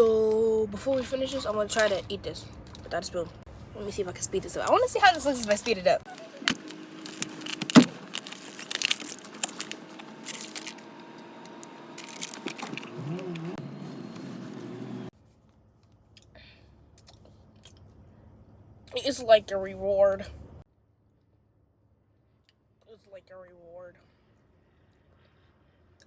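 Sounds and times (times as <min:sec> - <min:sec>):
crinkling and tearing: 0:05.4 - 0:16.1.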